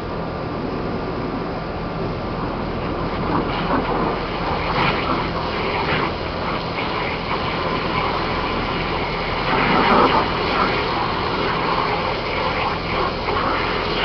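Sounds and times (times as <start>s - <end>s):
pressure washer motor hum: 0.1s - 14.0s
water spray hissing: 2.8s - 14.0s.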